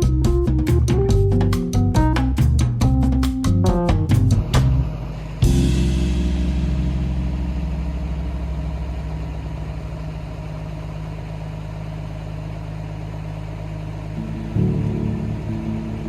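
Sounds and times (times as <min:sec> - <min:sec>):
car engine idling: 0:04.1 - 0:16.0.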